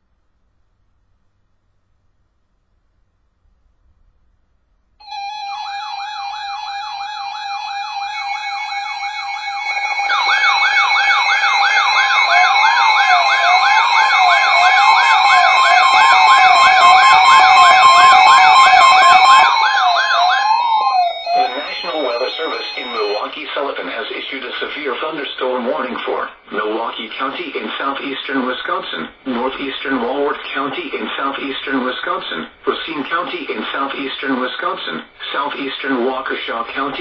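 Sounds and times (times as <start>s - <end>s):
slow rise and fall siren: 5.0s - 23.4s
electronic sirens warbling: 5.0s - 26.2s, 36.7s - 37.0s.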